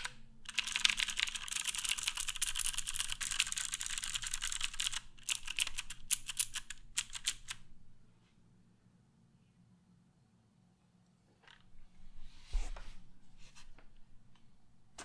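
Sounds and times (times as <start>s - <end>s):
mechanical keyboard typing: 0.0s - 7.6s.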